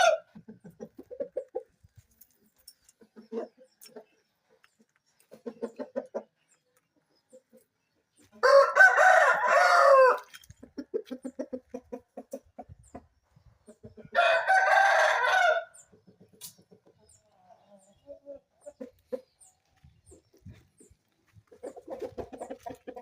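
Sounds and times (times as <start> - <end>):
rooster crowing: 8.4 - 10.3, 14.2 - 15.8.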